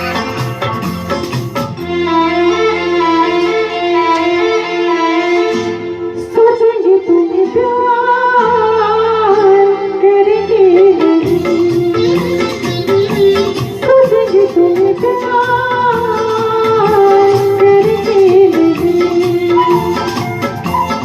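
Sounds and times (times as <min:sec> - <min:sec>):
bass accompaniment: 0:00.0 - 0:06.6, 0:07.2 - 0:21.0
wavering held-note melody: 0:19.4 - 0:21.0.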